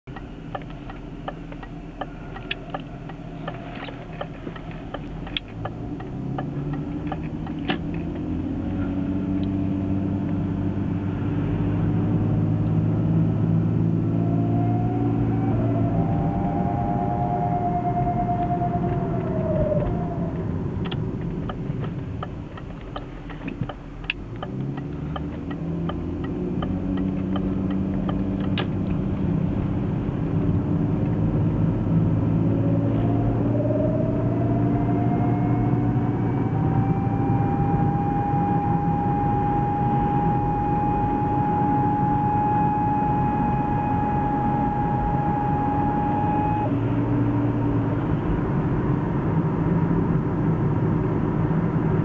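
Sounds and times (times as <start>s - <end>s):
road and drivetrain rumble: 0.0s - 52.0s
rising whine: 0.1s - 52.0s
even ticking: 20.8s - 28.7s.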